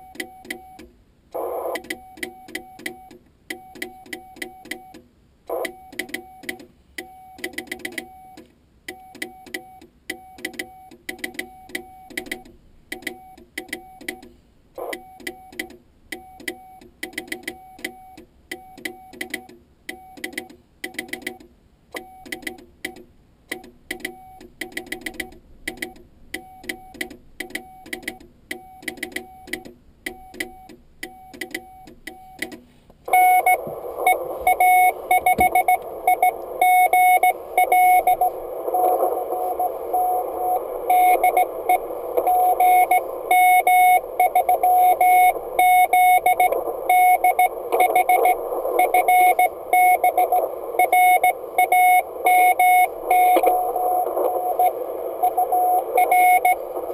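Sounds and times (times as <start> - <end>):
radio static: 1.4 - 1.8, 33.1 - 56.9
morse code tone beeps: 1.4 - 12.4, 22.0 - 22.6, 23.9 - 32.5, 33.1 - 56.9
telegraph key contacts clicking: 7.4 - 9.6, 20.2 - 56.9.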